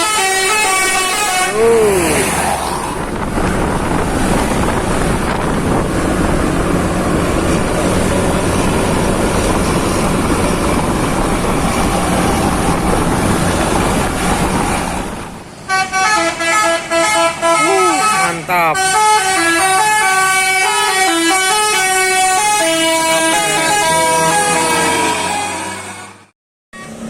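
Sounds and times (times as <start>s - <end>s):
multi-tone bus horn melody: 0.0s - 2.5s, 15.7s - 27.0s
bus engine and road noise: 0.0s - 27.0s.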